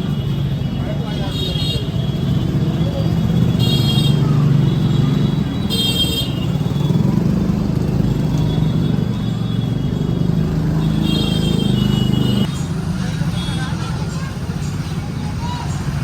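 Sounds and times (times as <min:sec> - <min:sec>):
traffic engines running: 0:00.0 - 0:16.0
vehicle horn honking: 0:03.5 - 0:07.2, 0:10.7 - 0:12.5.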